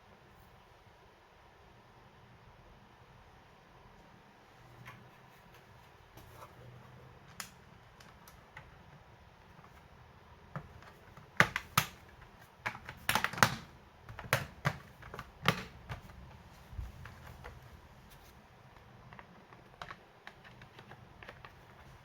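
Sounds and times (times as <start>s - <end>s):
plastic clicks and taps: 10.5s - 16.2s.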